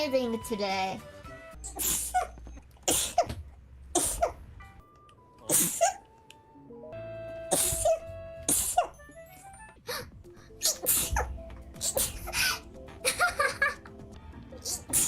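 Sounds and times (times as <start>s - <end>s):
person sneezing: 1.6s - 3.4s, 4.0s - 4.4s, 5.5s - 6.0s, 7.5s - 9.0s, 9.9s - 12.6s, 14.6s - 15.0s.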